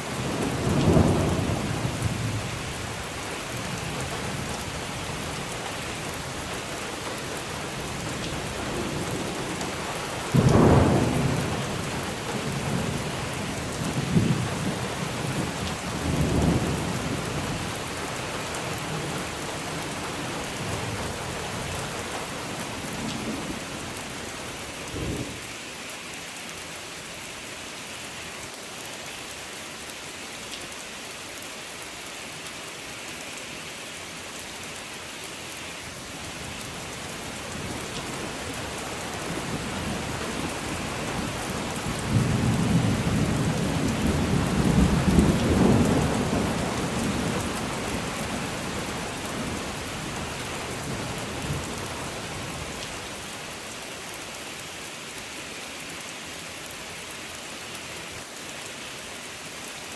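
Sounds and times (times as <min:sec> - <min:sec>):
steady rain: 0:00.0 - 0:59.9
rumble of thunder: 0:00.4 - 0:02.5, 0:10.3 - 0:13.2, 0:39.4 - 0:48.0.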